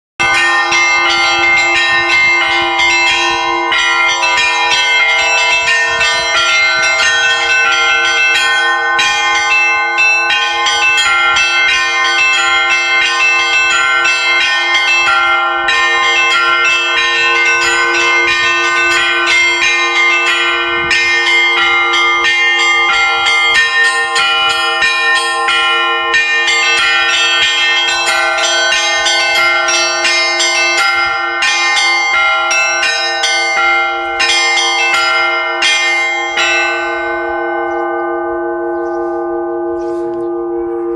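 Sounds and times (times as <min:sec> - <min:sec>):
low church bells humming: 0:00.2 - 0:40.9
small high church bells: 0:00.2 - 0:40.9.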